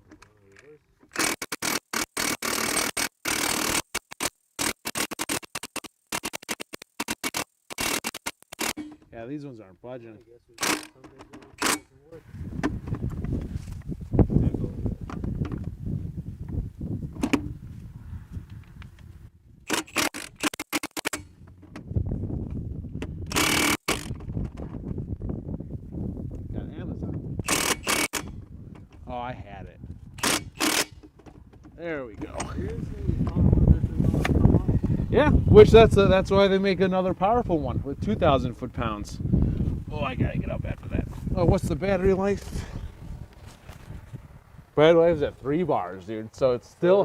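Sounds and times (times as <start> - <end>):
impact wrench hammering: 1.1 - 9.1, 19.7 - 21.4, 23.3 - 24.2, 27.4 - 28.4, 30.2 - 31.4.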